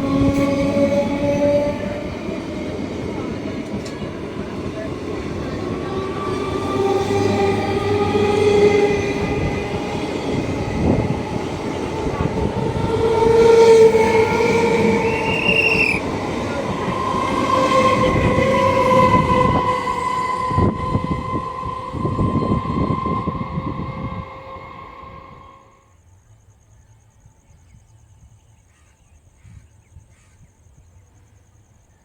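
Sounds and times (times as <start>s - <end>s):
train horn: 0.0s - 2.2s, 3.2s - 25.8s.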